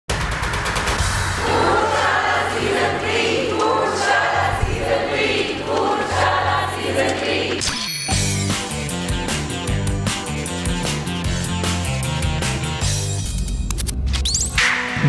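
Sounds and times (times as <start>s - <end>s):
dramatic choral music: 0.6s - 10.4s.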